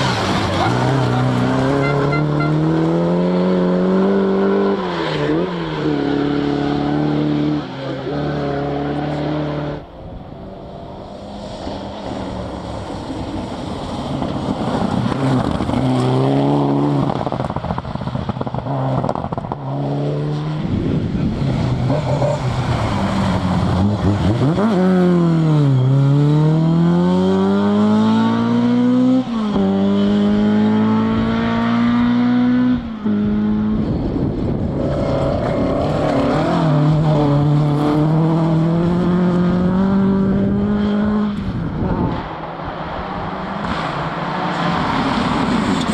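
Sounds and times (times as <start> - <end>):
car engine revving through gears: 0.0 - 9.8, 21.5 - 33.9, 34.8 - 45.9.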